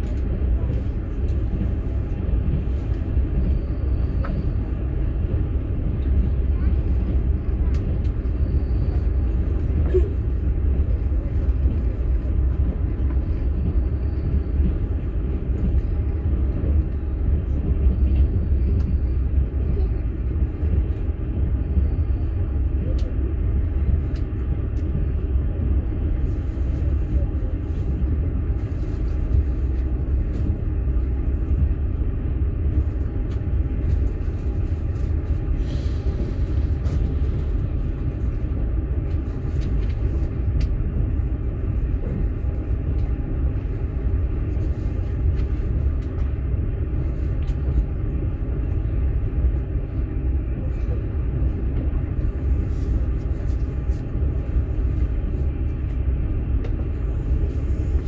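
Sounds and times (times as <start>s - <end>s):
moving train rumble: 0.0s - 58.0s.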